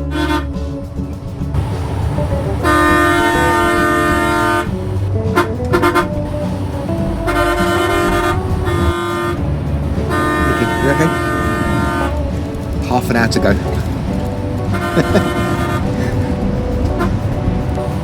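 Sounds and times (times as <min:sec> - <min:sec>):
vehicle horn honking: 0:00.0 - 0:00.6, 0:01.8 - 0:09.4, 0:10.1 - 0:12.4, 0:14.7 - 0:16.2, 0:17.0 - 0:17.2.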